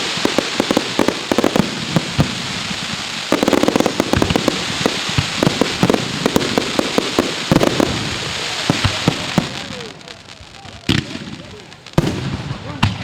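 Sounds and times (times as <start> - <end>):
fireworks bangs and pops: 0.0 - 13.0
fireworks hiss: 0.0 - 13.0.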